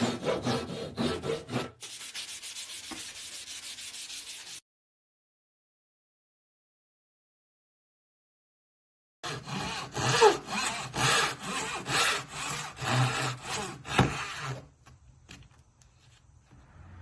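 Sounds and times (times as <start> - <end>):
hand saw cutting wood: 0.0 - 1.9, 9.2 - 14.7.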